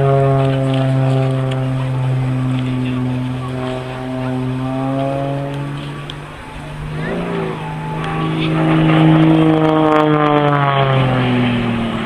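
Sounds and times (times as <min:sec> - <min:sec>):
propeller aeroplane flying past: 0:00.0 - 0:12.0.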